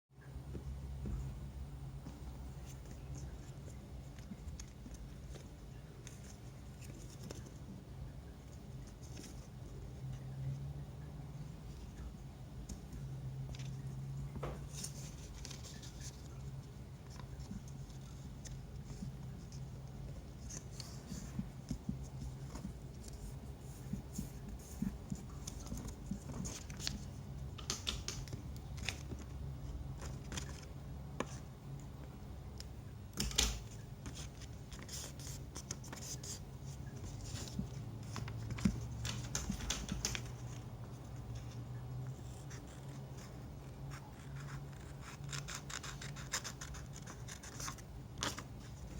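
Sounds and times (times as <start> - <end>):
steady low hum: 0.1 - 48.9
paper rustling and creasing: 2.1 - 7.8, 12.8 - 29.4, 30.0 - 31.4, 33.5 - 48.9.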